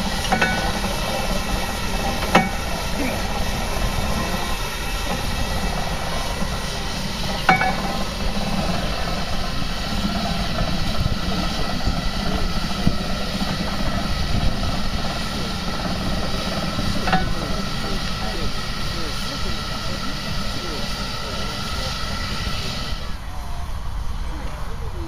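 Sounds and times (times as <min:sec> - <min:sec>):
steam engine rumbling: 0:00.0 - 0:25.0.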